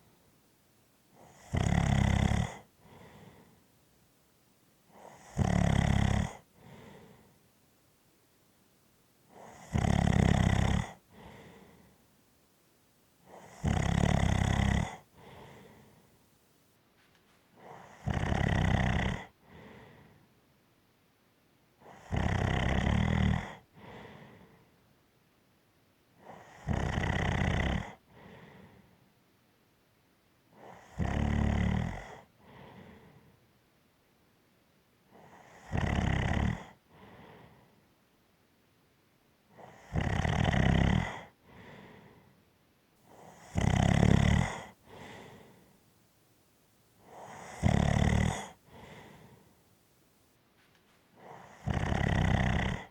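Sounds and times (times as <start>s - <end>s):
person snoring: 1.2s - 3.5s, 5.0s - 7.3s, 9.4s - 11.9s, 13.3s - 15.9s, 17.6s - 19.4s, 35.4s - 36.8s, 39.7s - 41.3s, 43.1s - 45.6s, 47.0s - 49.5s, 51.2s - 52.9s.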